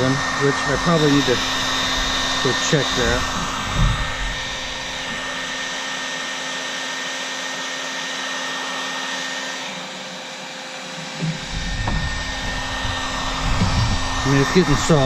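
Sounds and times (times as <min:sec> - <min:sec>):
low rumbling: 0:00.0 - 0:05.8, 0:11.2 - 0:15.0
heat gun blowing air: 0:00.0 - 0:15.0.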